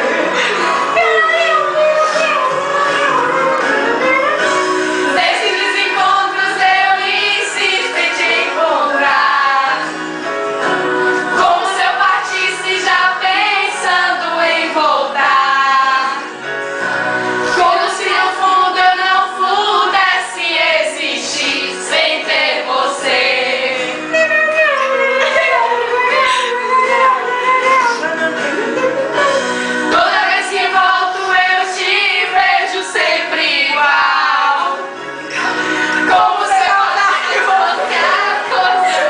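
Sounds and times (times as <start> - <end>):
women singing together: 0.0 - 10.1, 11.1 - 16.4, 17.5 - 39.0
music playing: 0.0 - 39.0.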